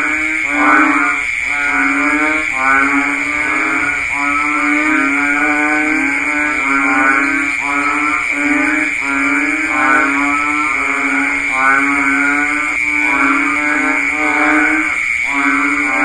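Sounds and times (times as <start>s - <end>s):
frogs calling in chorus: 0.0s - 16.0s
steady high buzz: 0.0s - 16.0s.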